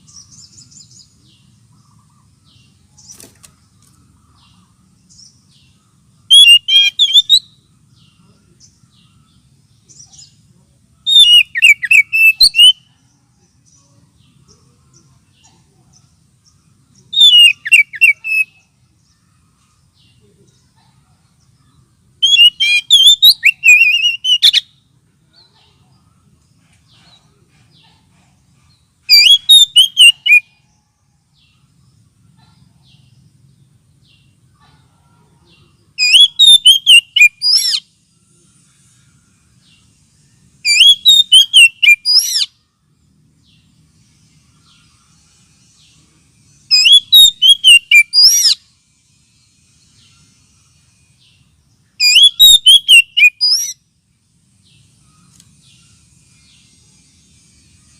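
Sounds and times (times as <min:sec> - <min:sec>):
bird singing whistled notes: 0:04.4 - 0:10.4, 0:11.0 - 0:15.0, 0:16.5 - 0:19.3, 0:21.7 - 0:24.9, 0:29.0 - 0:31.6, 0:36.0 - 0:38.0, 0:39.0 - 0:42.6, 0:44.3 - 0:48.7, 0:49.7 - 0:53.8.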